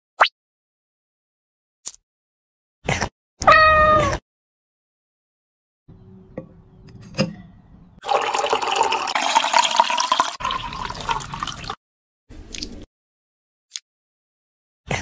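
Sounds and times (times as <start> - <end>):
water running into a container: 8.0 - 11.8.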